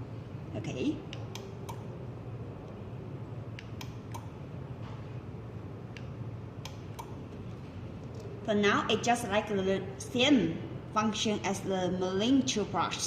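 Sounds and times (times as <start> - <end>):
steady low hum: 0.0 - 13.0
remote control buttons clicking: 3.6 - 4.3.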